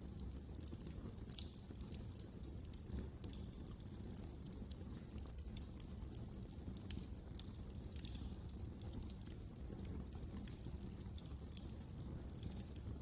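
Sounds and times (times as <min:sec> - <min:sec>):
wood fire crackling: 0:00.0 - 0:13.0.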